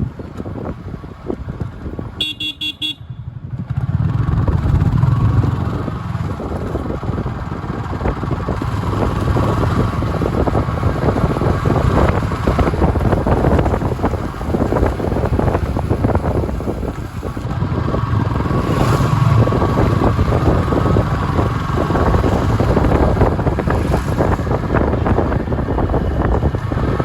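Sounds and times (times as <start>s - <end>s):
road traffic engines: 0.0s - 27.0s
short horn beeps: 2.2s - 3.2s.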